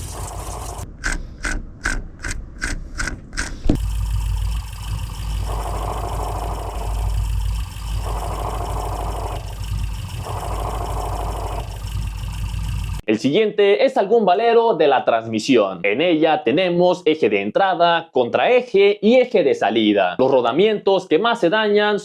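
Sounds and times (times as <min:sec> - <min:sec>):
car engine idling: 0:00.0 - 0:13.0
whirring growl of clutch bearing: 0:00.0 - 0:13.0
fast evenly spaced knocks: 0:00.2 - 0:13.0.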